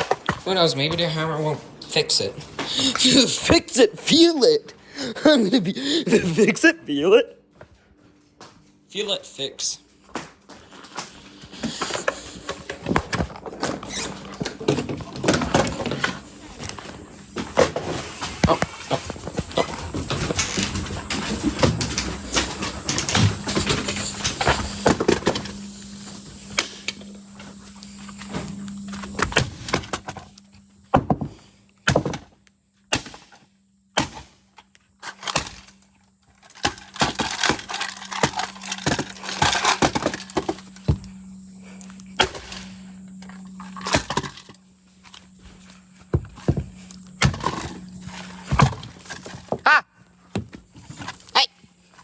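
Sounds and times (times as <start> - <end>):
steady low hum: 0.0 - 34.4, 36.4 - 52.0.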